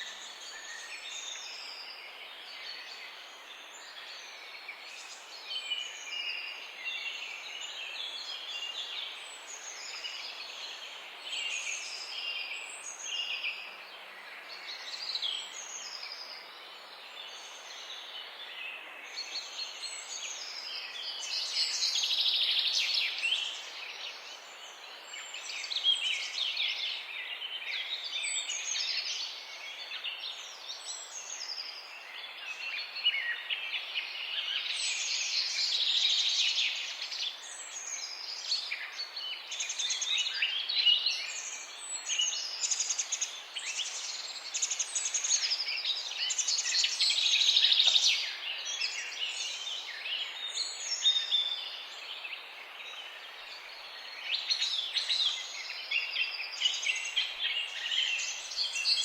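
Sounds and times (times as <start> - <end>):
birds singing and chirping: 19.4 - 59.0.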